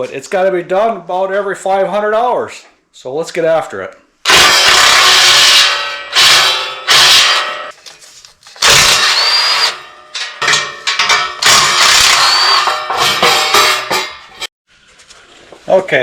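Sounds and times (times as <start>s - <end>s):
power tool bursts: 4.2s - 7.7s, 8.6s - 9.8s, 11.4s - 13.4s.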